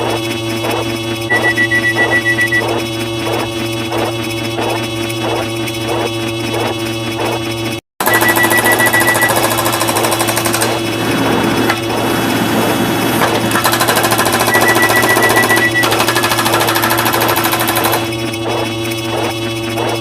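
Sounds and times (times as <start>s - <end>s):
fast-pulsing high beep: 1.3s - 2.8s, 8.0s - 10.1s, 13.8s - 17.9s.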